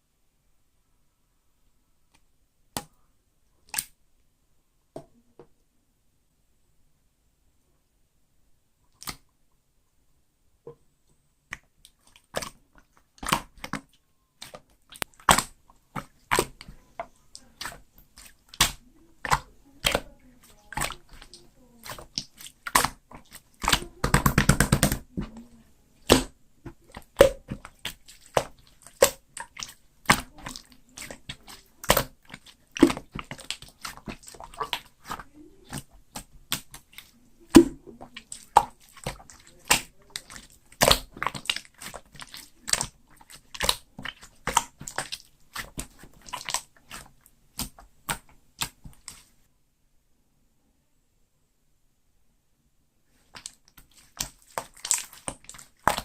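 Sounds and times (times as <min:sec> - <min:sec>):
slime crackling: 0:11.6 - 0:49.4, 0:53.1 - 0:56.0.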